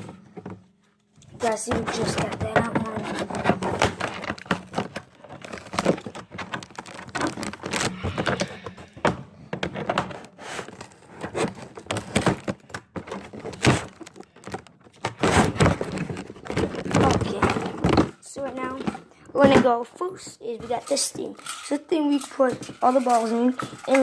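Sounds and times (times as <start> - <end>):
plastic knocks and thunks: 0.0 - 19.8
packaging crinkling and rustling: 1.2 - 19.7, 20.6 - 24.0.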